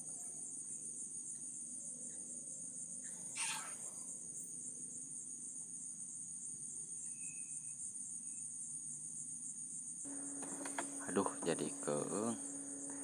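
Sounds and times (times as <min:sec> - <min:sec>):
crickets chirping: 0:00.0 - 0:13.0.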